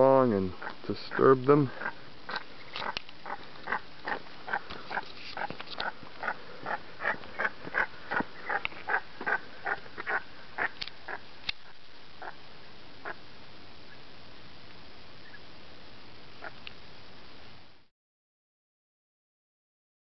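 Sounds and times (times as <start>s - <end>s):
grebes calling rapidly: 0.0s - 13.3s.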